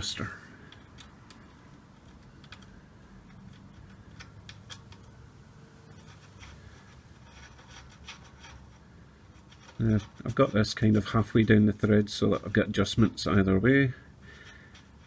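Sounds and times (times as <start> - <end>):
small metal parts clicking: 5.9 - 8.8.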